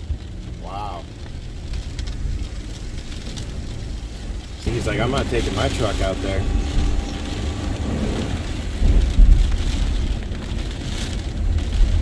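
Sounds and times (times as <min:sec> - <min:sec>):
rain-like hiss: 0:00.0 - 0:12.0
wind buffeting microphone: 0:01.4 - 0:12.0
strong wind gusting: 0:03.6 - 0:12.0.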